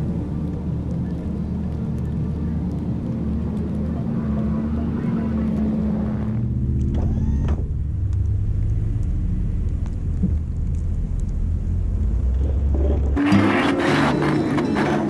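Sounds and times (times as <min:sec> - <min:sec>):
truck engine rumbling: 0:00.0 - 0:15.0
brief whine: 0:06.1 - 0:07.7.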